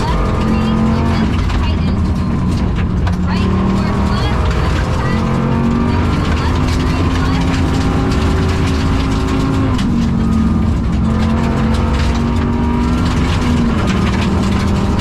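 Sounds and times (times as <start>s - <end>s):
misfiring car engine under load: 0.0s - 15.0s
rapid clicking: 0.0s - 15.0s.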